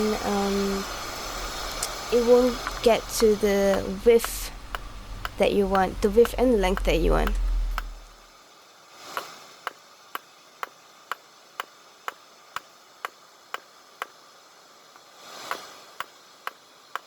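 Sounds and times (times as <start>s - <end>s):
faint rushing: 0.0s - 8.2s.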